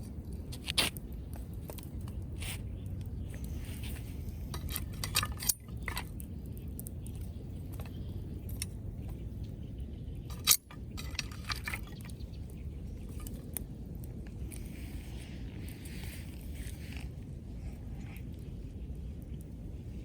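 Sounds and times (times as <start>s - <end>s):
metallic clinks and knocks: 4.5s - 6.2s, 10.3s - 12.0s.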